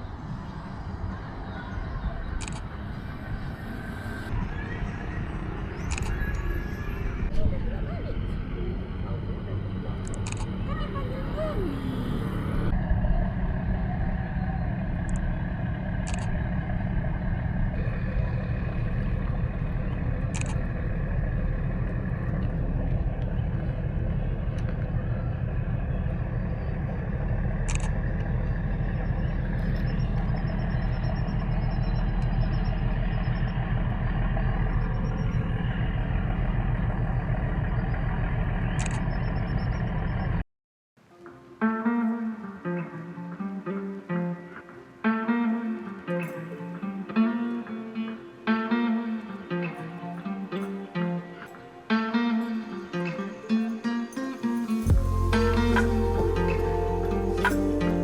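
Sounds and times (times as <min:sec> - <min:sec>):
low background rumble: 0:02.1 - 0:40.4, 0:54.9 - 0:58.0
acoustic guitar music: 0:41.2 - 0:58.0.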